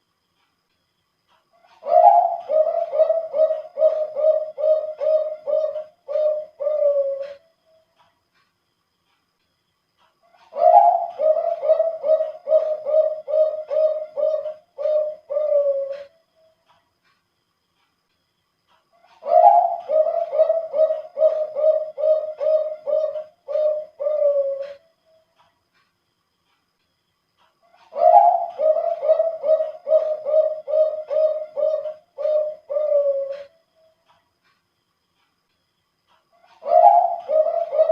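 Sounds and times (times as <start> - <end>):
dove cooing song: 1.6 - 7.5, 10.3 - 16.3, 19.0 - 24.9, 27.7 - 33.7, 36.4 - 37.9.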